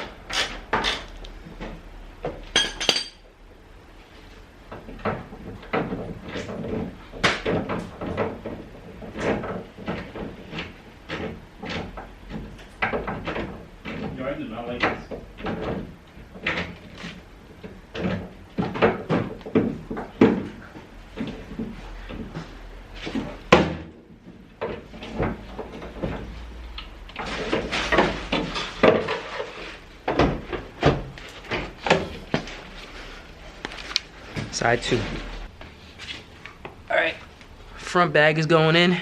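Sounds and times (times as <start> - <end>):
knocks and clunks of tools: 4.7 - 26.4.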